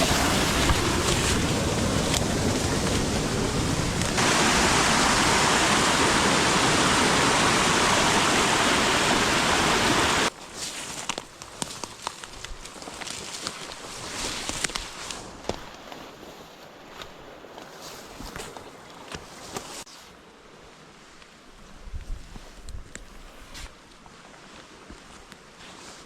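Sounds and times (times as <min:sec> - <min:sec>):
rushing water: 0:00.0 - 0:10.3
faint ticks and rustles: 0:10.4 - 0:20.2, 0:21.1 - 0:26.0.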